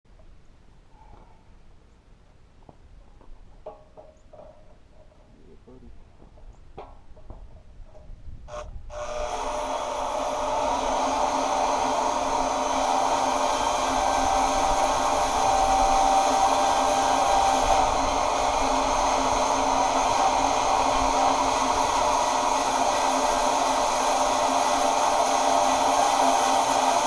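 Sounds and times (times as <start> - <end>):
power tool motor whining: 8.5 - 27.0.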